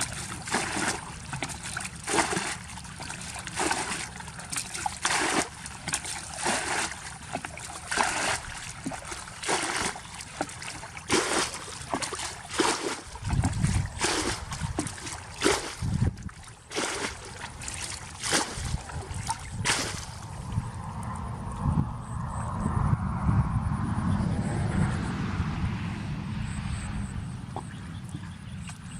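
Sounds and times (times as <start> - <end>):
water splashing and trickling: 0.0 - 21.7, 27.6 - 28.9
deep low rumbles: 18.6 - 28.5.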